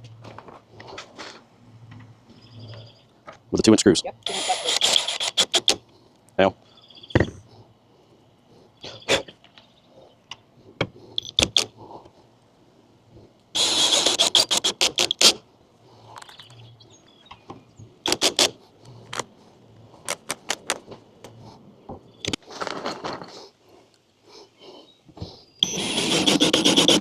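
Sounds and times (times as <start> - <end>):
power drill driving screws: 4.2 - 5.8, 13.6 - 15.4, 18.1 - 18.6, 25.6 - 27.0.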